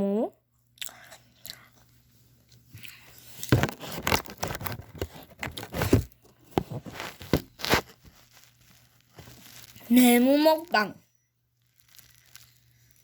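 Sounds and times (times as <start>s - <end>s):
plastic wrapper crinkling and tearing: 3.3s - 10.7s, 11.6s - 13.0s.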